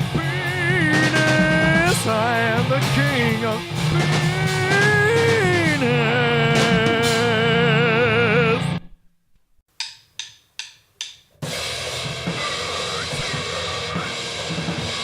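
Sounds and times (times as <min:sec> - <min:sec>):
noisecore band playing: 0:00.0 - 0:08.8, 0:11.4 - 0:15.0
wavering vocal note over music: 0:03.6 - 0:08.8
drumstick clicks: 0:09.7 - 0:11.4.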